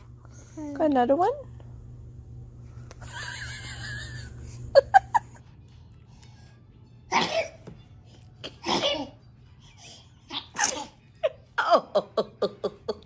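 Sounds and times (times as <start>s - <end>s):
baby sneezing: 7.1s - 7.6s, 8.4s - 9.2s, 10.3s - 11.0s.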